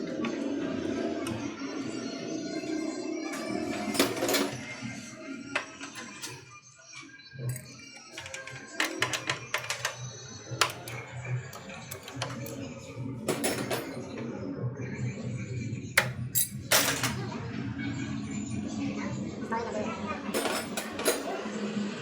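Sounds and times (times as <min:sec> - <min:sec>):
metal tools clinking: 0:03.4 - 0:04.7, 0:05.6 - 0:06.5, 0:07.5 - 0:10.0, 0:10.6 - 0:14.0, 0:16.0 - 0:17.2, 0:20.4 - 0:21.4.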